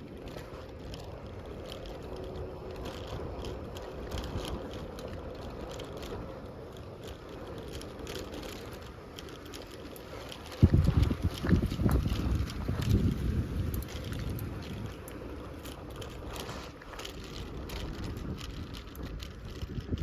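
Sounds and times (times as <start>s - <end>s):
bicycle tyres rumbling: 0.0s - 20.0s
bike clicks and rattles: 0.0s - 20.0s.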